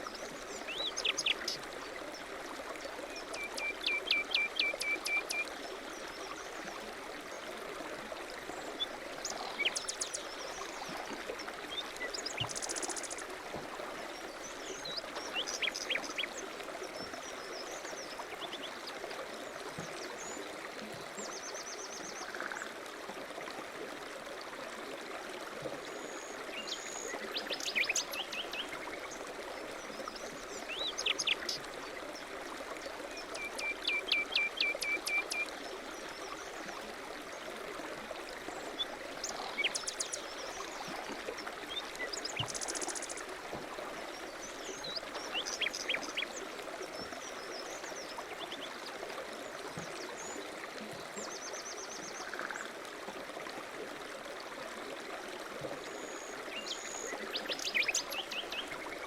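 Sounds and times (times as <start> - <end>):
songbirds singing and chirping: 0.5 - 1.6, 3.2 - 5.4, 8.6 - 10.6, 14.0 - 16.4, 44.1 - 48.8, 56.2 - 59.0.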